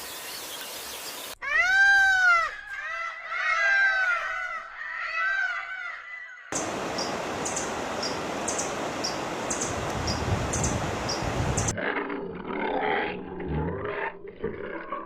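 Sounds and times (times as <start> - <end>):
steady hiss: 6.6 - 11.7.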